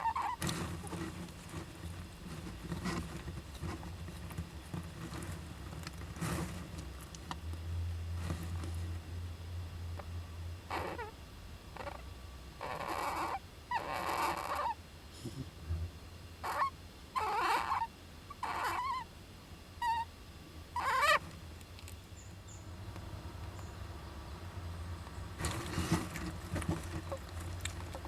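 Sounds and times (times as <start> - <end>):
flying squirrel calling: 0.0 - 0.4, 16.4 - 19.1, 19.8 - 20.1, 20.8 - 21.3.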